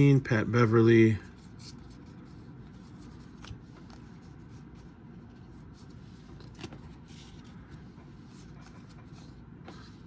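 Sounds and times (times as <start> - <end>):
steady low hum: 0.0 - 10.0.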